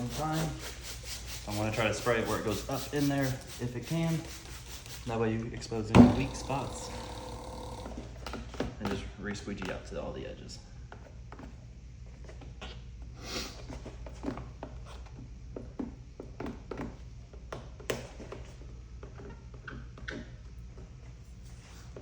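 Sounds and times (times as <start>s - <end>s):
steady low hum: 6.0s - 8.2s.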